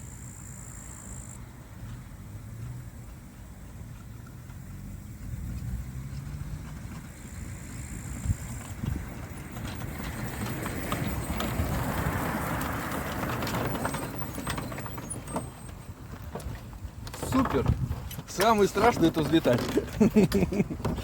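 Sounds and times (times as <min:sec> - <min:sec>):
small aircraft engine running: 0:00.0 - 0:16.8
knocks and rattles: 0:07.9 - 0:21.0.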